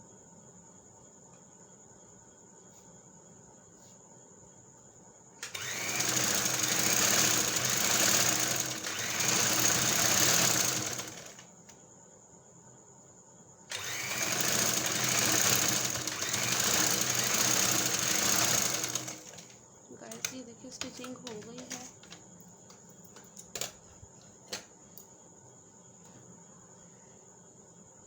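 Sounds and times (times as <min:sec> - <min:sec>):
sewing machine running: 0:05.4 - 0:11.4, 0:13.7 - 0:19.5.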